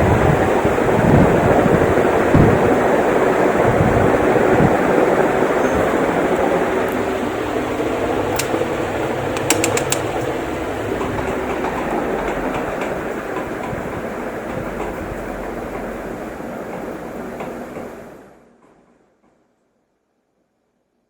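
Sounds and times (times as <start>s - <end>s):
fan motor hum: 0.0s - 18.2s
ceiling fan air rush: 0.0s - 18.6s
light clicks: 8.3s - 10.3s.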